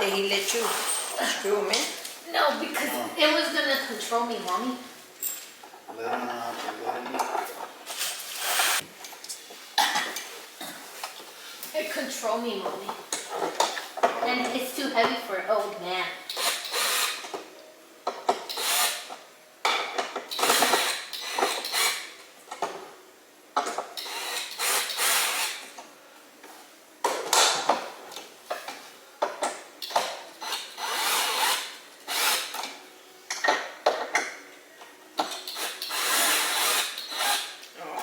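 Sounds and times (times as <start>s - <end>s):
power tool driving screws: 8.3s - 8.8s, 16.3s - 17.3s, 18.5s - 19.2s, 20.3s - 22.1s, 24.0s - 25.6s, 29.9s - 32.7s, 35.4s - 37.6s.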